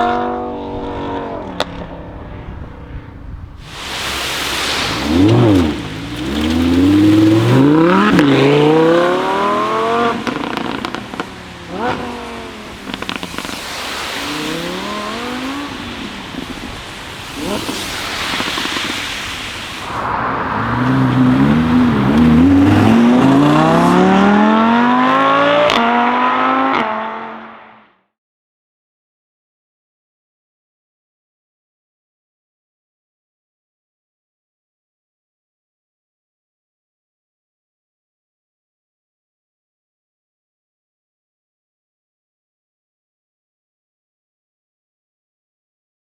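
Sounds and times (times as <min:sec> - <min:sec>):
sports car engine accelerating: 0:00.0 - 0:18.6, 0:19.9 - 0:27.9
exhaust pops: 0:01.3 - 0:25.9.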